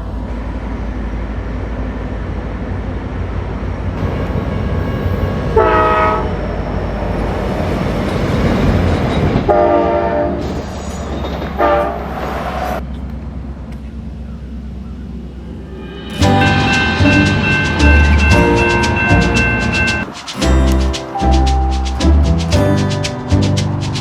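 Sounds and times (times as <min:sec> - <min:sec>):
passenger train rumbling by: 0:00.0 - 0:24.0
train horn blasts: 0:05.6 - 0:06.4, 0:09.5 - 0:10.4, 0:11.6 - 0:12.2, 0:16.0 - 0:20.1.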